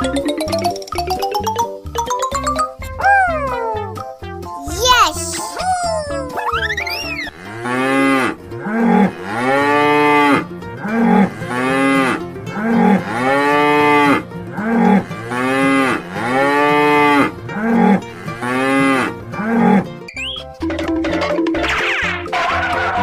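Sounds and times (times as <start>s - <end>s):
cow mooing: 7.4s - 19.9s.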